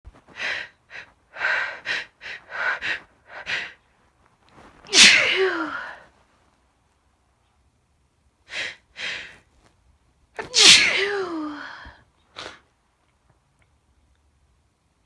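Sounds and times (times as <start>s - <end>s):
woman's sharp noisy breaths: 0.2s - 3.8s, 8.5s - 9.5s, 10.6s - 12.6s
woman sneezing loudly: 4.9s - 6.0s, 10.4s - 11.8s.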